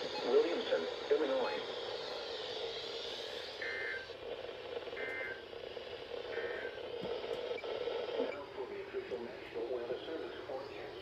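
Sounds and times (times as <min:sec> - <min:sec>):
radio static: 0:00.0 - 0:02.7
two-tone digital data bursts: 0:00.0 - 0:04.2.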